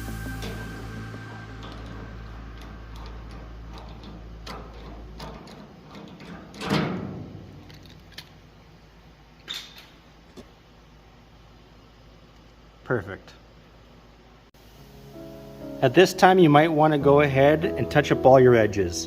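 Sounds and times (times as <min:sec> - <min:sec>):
low hum: 0:00.0 - 0:09.3.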